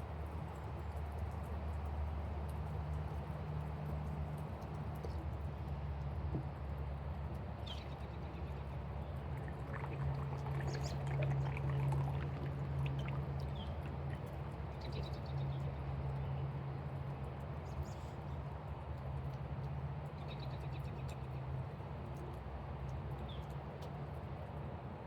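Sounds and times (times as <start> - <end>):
low steady hum: 7.6 - 16.8
birds chirping: 7.7 - 15.6.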